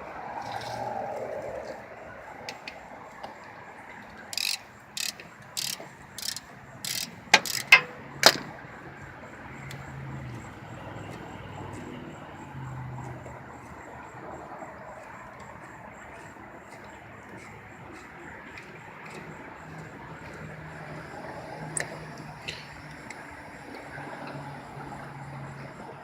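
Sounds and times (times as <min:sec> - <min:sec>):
ratchet wrench ratcheting: 0:04.3 - 0:08.4
sharp metallic clicks: 0:04.3 - 0:08.5.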